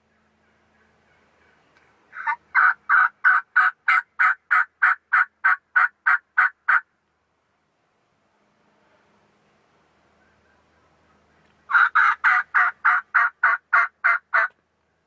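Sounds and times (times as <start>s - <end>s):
turkey yelps: 0.4s - 6.8s, 11.7s - 14.6s.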